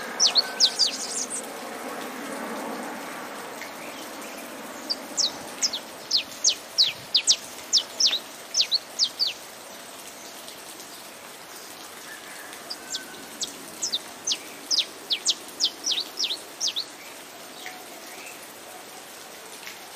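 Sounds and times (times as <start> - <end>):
finch singing high notes: 0.0 - 1.4, 13.8 - 17.0
rain hissing: 0.0 - 19.9.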